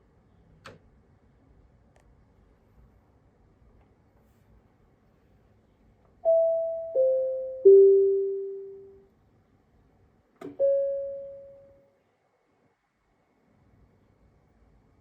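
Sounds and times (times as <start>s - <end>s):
click: 0.6s - 0.8s, 10.4s - 10.6s
bell-like announcement chime: 6.3s - 9.0s, 10.6s - 11.8s.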